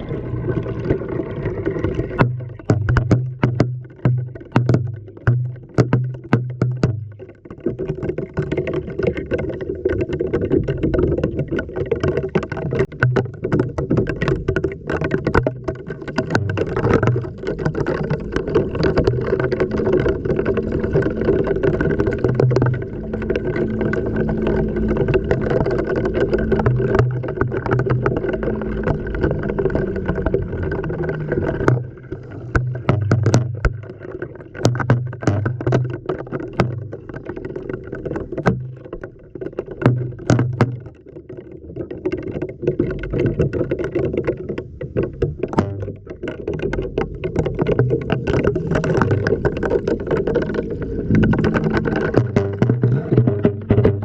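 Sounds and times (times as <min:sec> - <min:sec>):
water sloshing: 0:00.0 - 0:54.0
camera knocking against drum: 0:02.2 - 0:07.1, 0:32.6 - 0:33.8.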